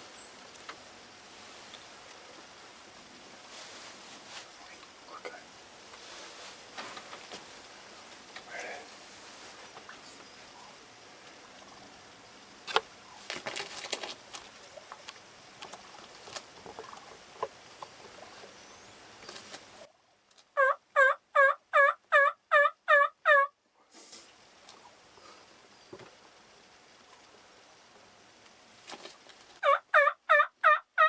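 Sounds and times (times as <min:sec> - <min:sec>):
faint rustling: 0:00.0 - 0:11.9
turkey yelps: 0:20.6 - 0:23.5, 0:29.6 - 0:31.0.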